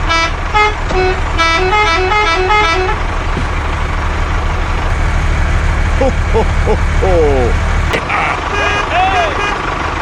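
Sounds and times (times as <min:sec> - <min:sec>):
musical vehicle horn: 0:00.0 - 0:03.0
low engine rumble: 0:00.0 - 0:10.0.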